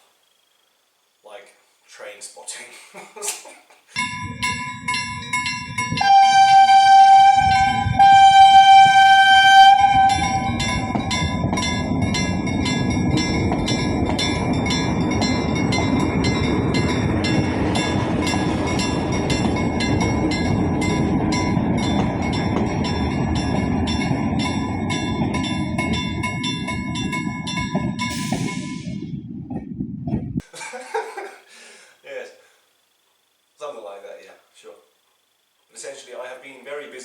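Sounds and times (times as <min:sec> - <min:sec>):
level-crossing bell ringing: 0:03.9 - 0:29.1
train rumbling past: 0:04.0 - 0:30.4
train horn blast: 0:06.0 - 0:11.8.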